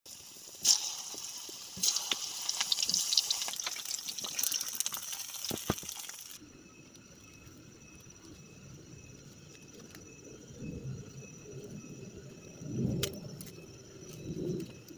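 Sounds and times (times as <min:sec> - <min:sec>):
rain pattering and splashing: 0:01.8 - 0:06.4.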